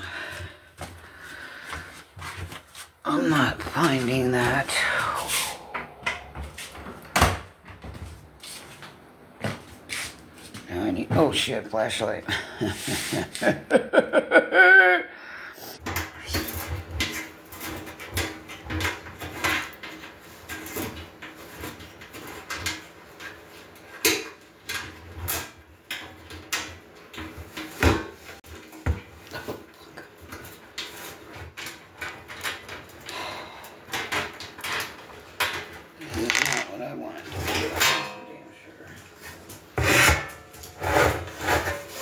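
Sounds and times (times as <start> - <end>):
high-pitched rising vocal sound: 4.8 - 6.9
objects clunking when handled: 33.9 - 36.8.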